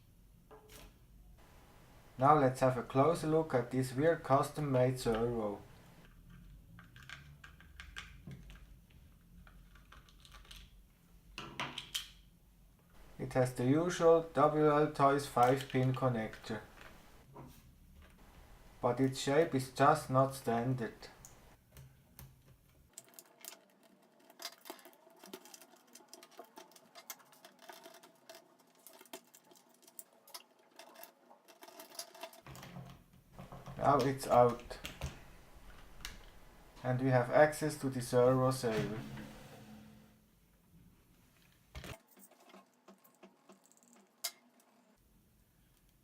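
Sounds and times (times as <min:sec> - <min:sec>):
small parts clicking and scraping: 0:22.8 - 0:33.0, 0:41.4 - 0:45.0.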